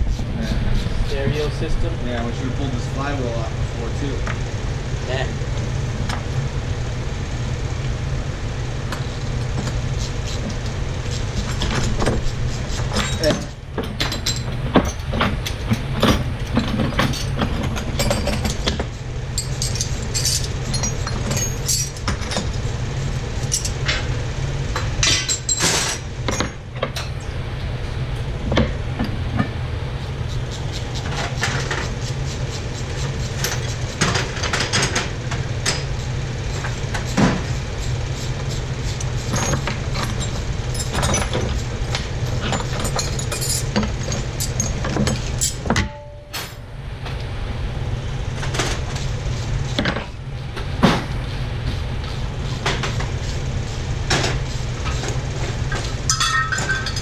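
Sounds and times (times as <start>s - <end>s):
steady low hum: 0.0s - 57.0s
hand tools clanking on metal: 12.9s - 18.7s, 19.4s - 22.5s, 42.3s - 46.6s, 56.1s - 57.0s.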